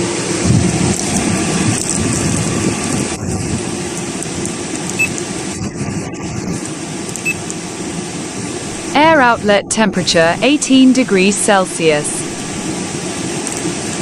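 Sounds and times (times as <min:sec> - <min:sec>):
air conditioner fan whoosh: 0:00.0 - 0:14.0.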